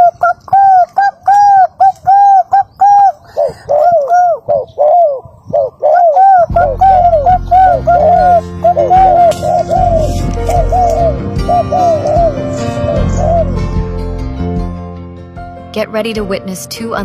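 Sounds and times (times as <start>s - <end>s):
dove calls: 0.0s - 13.8s
background music: 6.1s - 17.0s.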